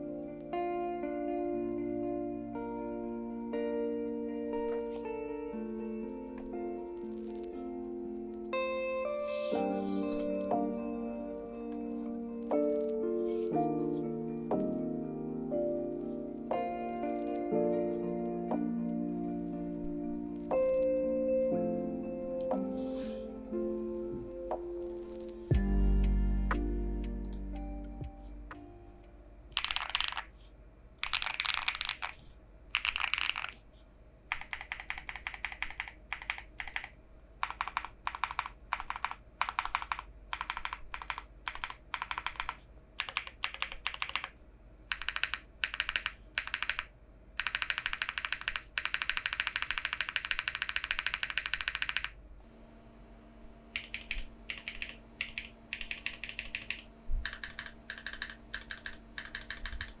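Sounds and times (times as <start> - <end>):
mechanical keyboard typing: 29.5 - 30.4, 31.0 - 33.7, 34.3 - 52.2, 53.8 - 60.0.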